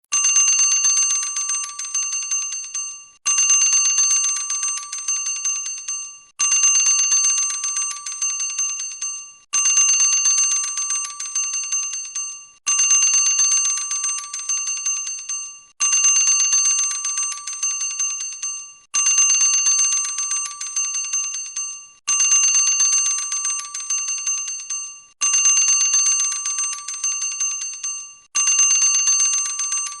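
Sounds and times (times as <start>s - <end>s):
boxing ring bell ringing: 0.1s - 30.0s.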